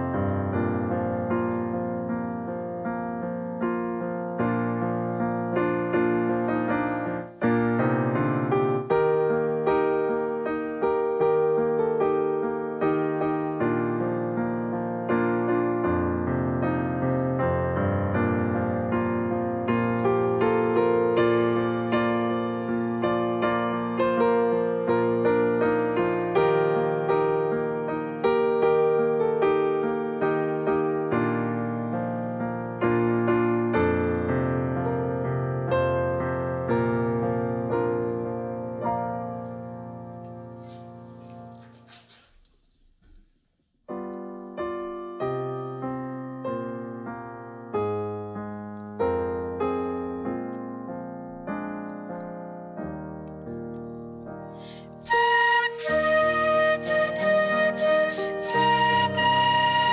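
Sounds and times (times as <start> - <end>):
piano playing: 0.0 - 41.8, 43.9 - 59.9.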